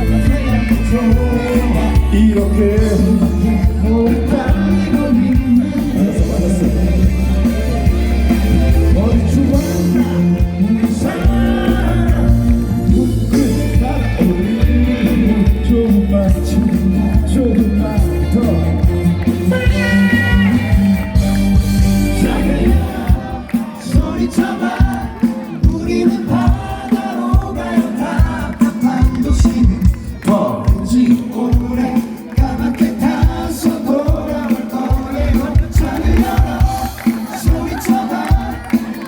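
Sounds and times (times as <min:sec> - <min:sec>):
crowd singing along: 0:00.0 - 0:39.0
live band music: 0:00.0 - 0:39.0
man singing: 0:00.0 - 0:39.0
kick drum beat: 0:23.0 - 0:38.7.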